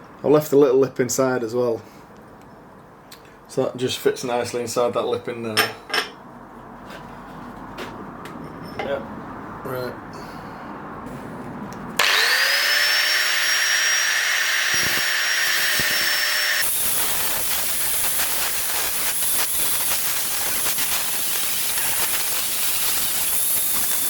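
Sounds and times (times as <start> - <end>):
angle grinder whining and cutting: 12.0 - 24.0.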